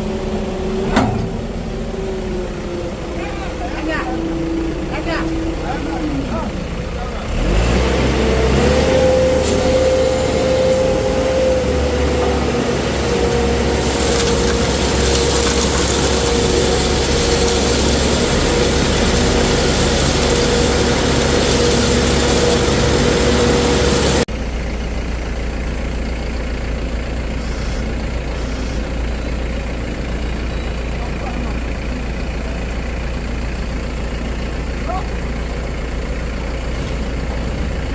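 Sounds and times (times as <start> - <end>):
steady whining tone: 0.0 - 6.6
low steady rumble: 0.0 - 7.2
heavy engine running: 0.0 - 37.9.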